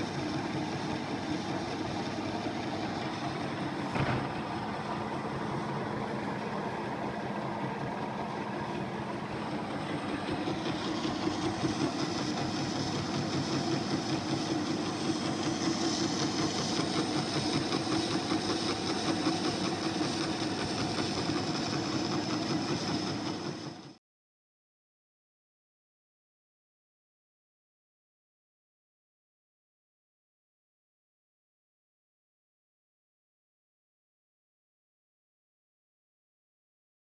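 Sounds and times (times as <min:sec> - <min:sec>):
metal lathe running: 0:00.0 - 0:24.0.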